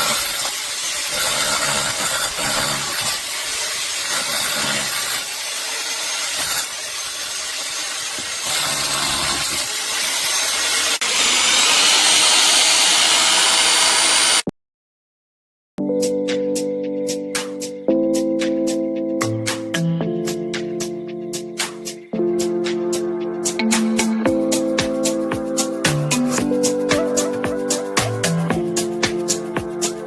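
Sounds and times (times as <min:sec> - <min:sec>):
rotary hammer drill running: 0:00.0 - 0:14.5.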